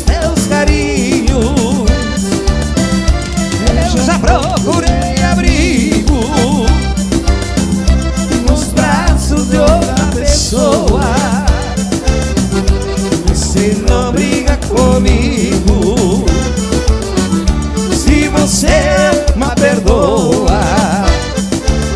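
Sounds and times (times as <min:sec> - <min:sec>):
live dance band playing: 0:00.0 - 0:21.9.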